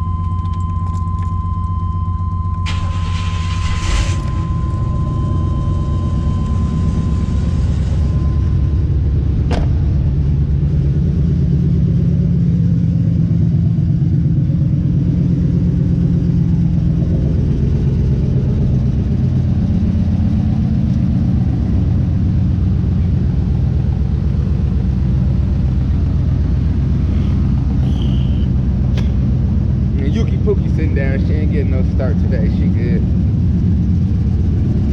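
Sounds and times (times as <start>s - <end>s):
steady high beep: 0.0s - 9.3s
engine rumbling: 0.0s - 34.9s.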